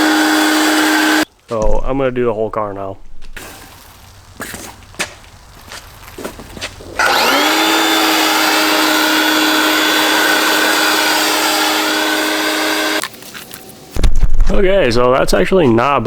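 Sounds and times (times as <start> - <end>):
pressure washer motor running: 0.0 - 1.2, 7.0 - 13.0.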